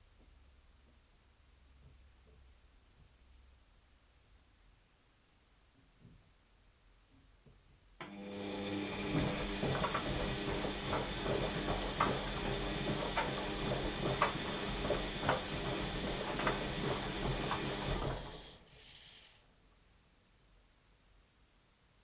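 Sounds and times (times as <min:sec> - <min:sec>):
washing machine motor hum: 0:08.0 - 0:18.7
washing machine drum knocks: 0:09.1 - 0:18.3.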